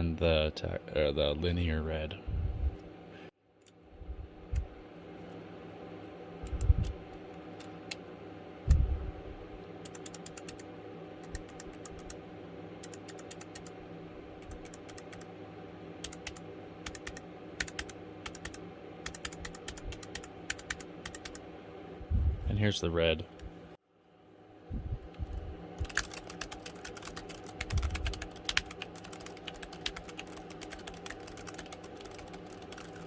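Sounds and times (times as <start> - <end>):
mechanical keyboard typing clicks: 9.9 - 10.6, 11.2 - 12.2, 12.8 - 13.7, 14.4 - 15.3, 16.0 - 21.4, 25.8 - 33.0.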